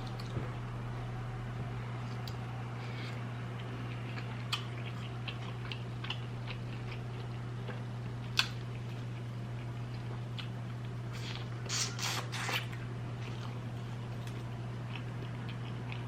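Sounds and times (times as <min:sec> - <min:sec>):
low hum: 0:00.0 - 0:16.0
chewing with wet mouth clicks: 0:03.6 - 0:16.0.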